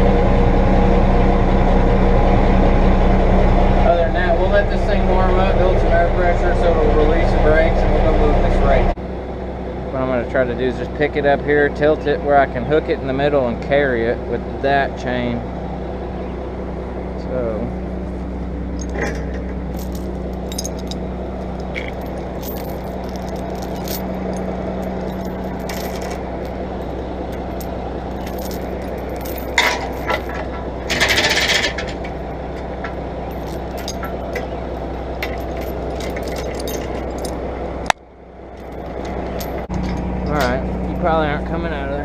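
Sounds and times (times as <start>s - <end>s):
diesel engine running: 0.0s - 42.0s
chain clanking and scraping: 18.2s - 37.5s, 38.5s - 41.2s
metallic clinks: 18.8s - 32.3s, 33.2s - 37.4s, 38.6s - 40.6s.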